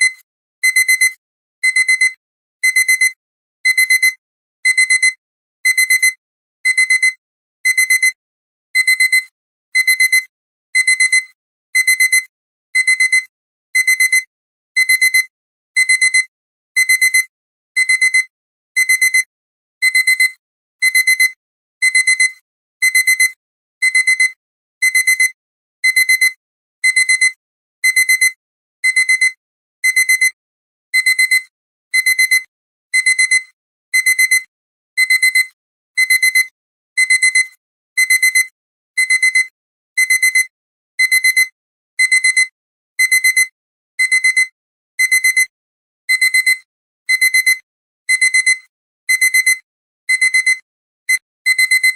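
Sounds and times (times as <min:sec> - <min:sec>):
alarm clock beeping: 0:08.8 - 0:12.2, 0:12.8 - 0:13.2, 0:13.8 - 0:14.2, 0:14.8 - 0:30.4, 0:31.0 - 0:32.4, 0:33.0 - 0:45.5, 0:46.1 - 0:51.9.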